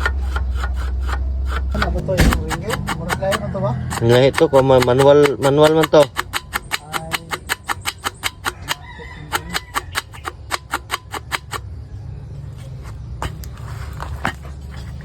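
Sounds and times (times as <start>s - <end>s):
engine knocking: 1.5s - 11.6s.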